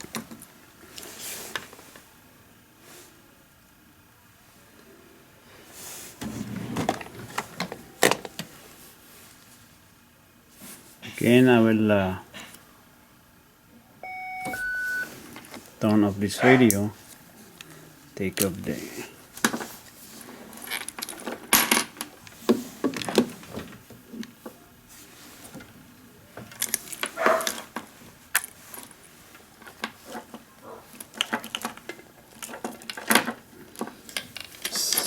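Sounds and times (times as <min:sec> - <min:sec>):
metallic clicks and rattles of cables: 0:26.4 - 0:35.0.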